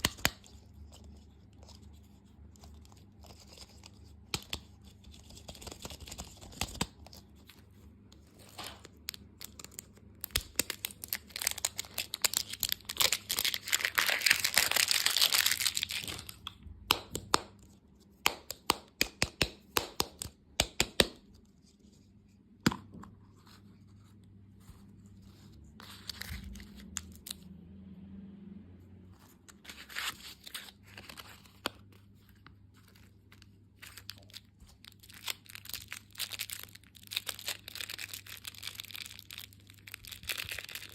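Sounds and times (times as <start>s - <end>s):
candy wrapper tearing and crinkling: 8.4s - 16.5s, 25.8s - 27.4s, 32.8s - 40.9s.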